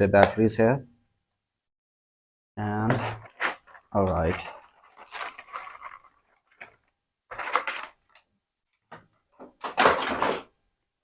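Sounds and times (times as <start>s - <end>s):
plastic packaging rustling: 3.0s - 8.3s.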